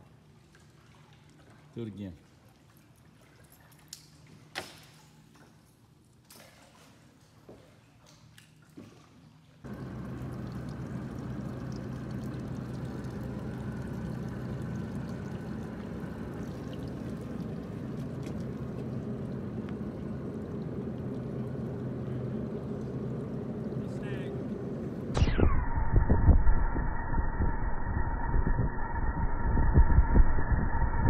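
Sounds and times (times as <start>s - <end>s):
rushing water: 9.7s - 25.1s
outboard motor running: 9.7s - 25.6s
wind noise: 25.4s - 31.0s.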